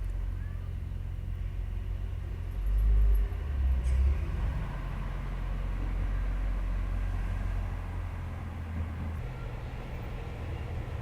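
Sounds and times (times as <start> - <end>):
deep soundtrack rumble from speaker: 0.0 - 11.0.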